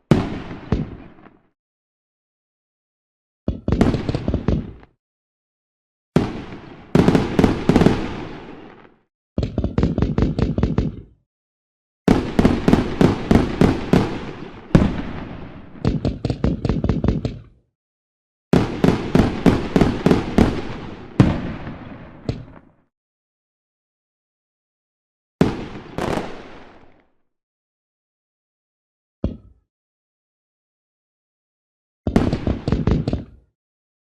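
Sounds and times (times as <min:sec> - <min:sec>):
fireworks banging and crackling: 0:00.0 - 0:01.4, 0:03.7 - 0:04.9, 0:06.2 - 0:09.0, 0:12.1 - 0:17.4, 0:18.5 - 0:22.8, 0:25.4 - 0:27.1, 0:32.1 - 0:33.4.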